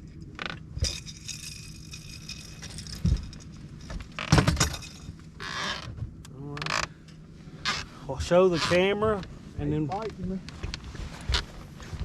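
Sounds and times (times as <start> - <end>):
low motor hum: 0.0 - 12.0
jangling clatter: 0.8 - 5.3.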